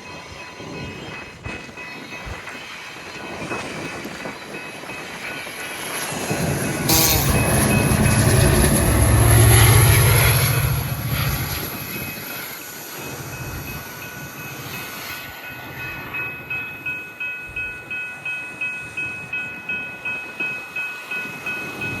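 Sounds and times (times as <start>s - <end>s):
crossing warning bell ringing: 0.0s - 22.0s
train passing rumble: 2.3s - 16.9s.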